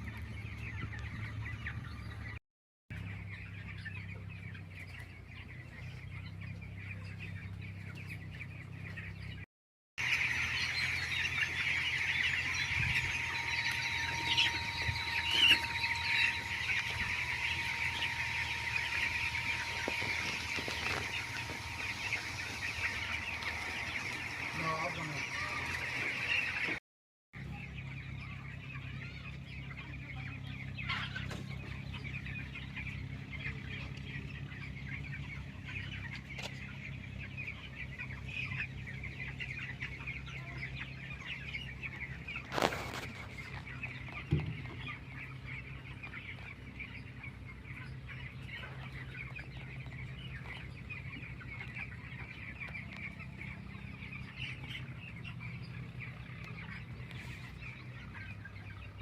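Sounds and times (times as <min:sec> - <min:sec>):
chickens clucking: 0:00.0 - 0:26.8, 0:27.4 - 0:59.0
low machine hum: 0:10.0 - 0:26.8.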